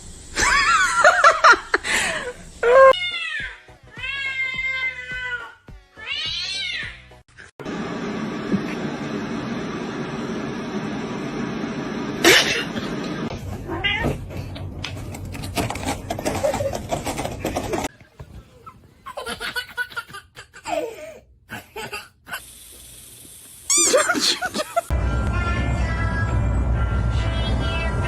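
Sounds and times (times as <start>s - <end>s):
cats meowing and yowling: 2.8s - 7.0s.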